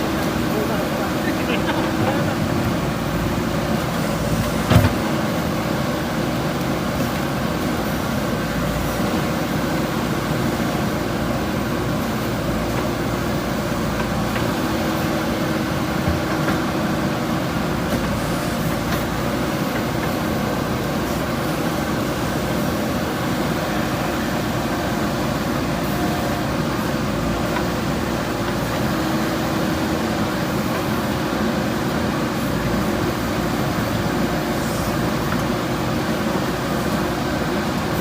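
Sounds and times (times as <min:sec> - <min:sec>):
diesel engine running: 0:00.0 - 0:38.0.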